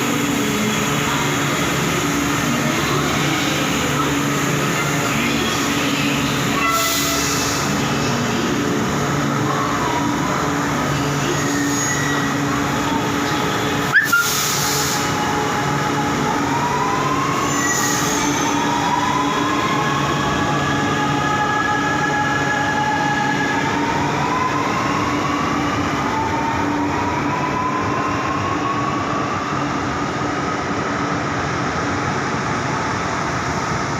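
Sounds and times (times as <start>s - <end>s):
metro train rumbling: 0.0s - 33.9s.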